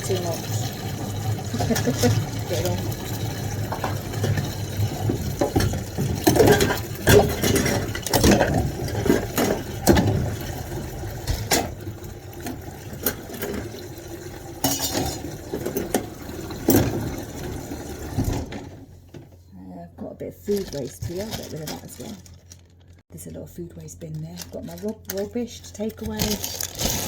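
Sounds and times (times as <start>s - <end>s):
pots and dishes clinking: 0.0s - 11.8s, 12.5s - 17.2s
water sloshing and splashing: 0.0s - 19.0s.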